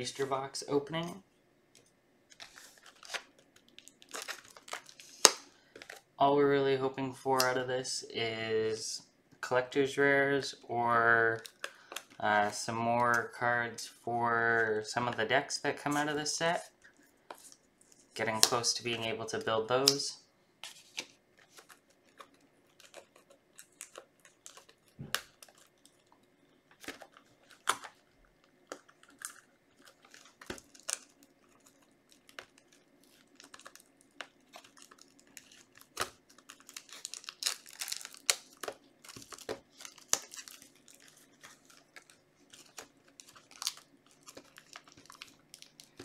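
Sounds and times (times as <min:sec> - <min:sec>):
packaging tearing and crinkling: 0:02.3 - 0:06.0, 0:20.7 - 0:46.0.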